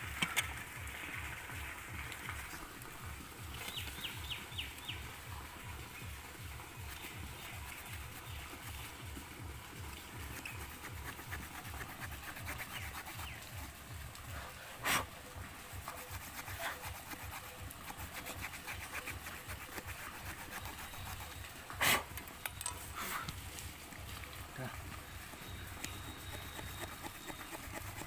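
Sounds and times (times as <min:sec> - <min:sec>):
small saw rasping through branch: 0:10.1 - 0:13.7, 0:15.8 - 0:22.1, 0:25.3 - 0:28.0.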